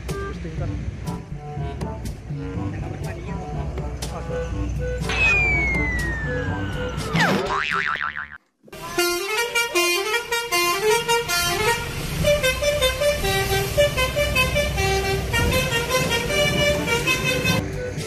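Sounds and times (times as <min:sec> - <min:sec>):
bus horn playing a melody: 0:08.8 - 0:18.0.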